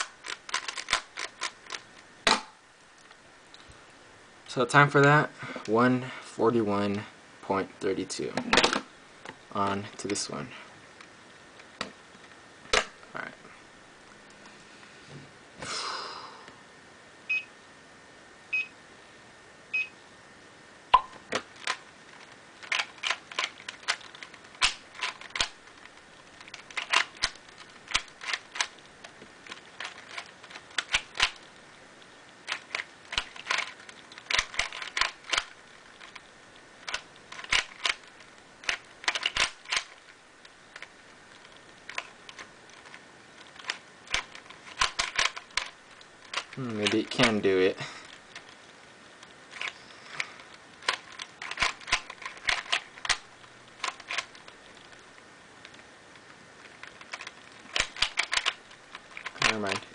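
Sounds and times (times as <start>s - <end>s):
puzzle cube clicking: 0.0s - 2.4s, 21.0s - 31.5s, 32.5s - 40.2s, 40.8s - 47.4s, 49.5s - 55.0s, 56.6s - 59.8s.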